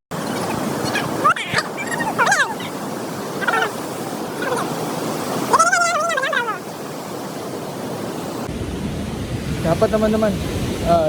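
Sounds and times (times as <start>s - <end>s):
waterfall and river rushing: 0.1s - 11.0s
wavering voice-like call: 0.2s - 4.8s, 5.4s - 6.7s.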